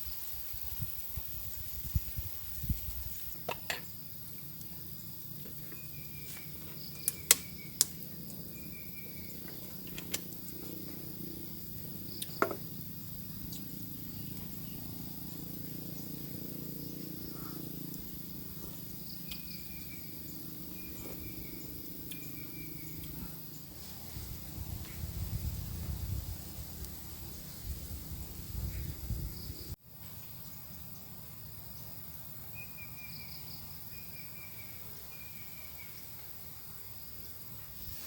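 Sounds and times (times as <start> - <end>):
insects droning: 0.0 - 38.0
sharp clicks or cracks: 7.0 - 8.0.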